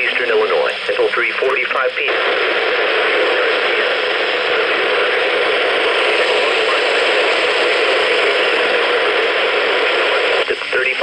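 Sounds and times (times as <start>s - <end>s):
loud radio static hiss: 0.0s - 11.0s.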